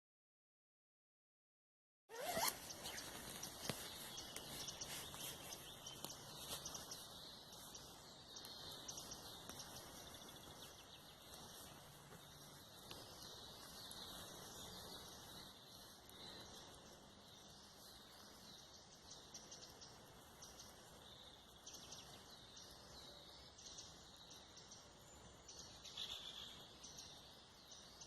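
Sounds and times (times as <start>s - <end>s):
small birds chirping: 2.1s - 28.0s
soft steady hiss: 2.5s - 28.0s.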